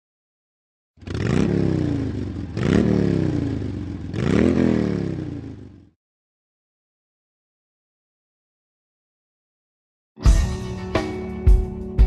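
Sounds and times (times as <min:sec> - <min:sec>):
motorcycle engine revving: 0:01.0 - 0:06.0.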